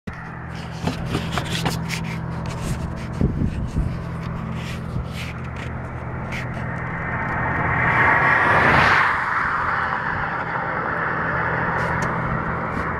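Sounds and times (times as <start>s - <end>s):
clicks and rustles: 0.1s - 7.4s
low droning machinery hum: 0.1s - 12.9s.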